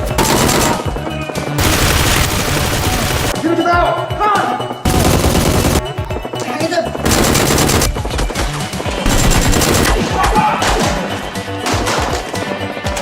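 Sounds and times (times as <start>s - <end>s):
music: 0.0s - 13.0s
automatic gunfire: 0.2s - 1.0s, 1.6s - 3.4s, 4.9s - 5.9s, 7.0s - 10.9s.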